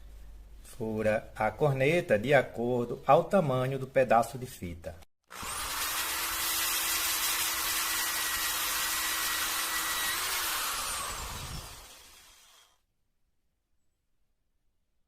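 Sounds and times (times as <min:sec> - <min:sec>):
electric drill boring metal: 0:05.3 - 0:12.8.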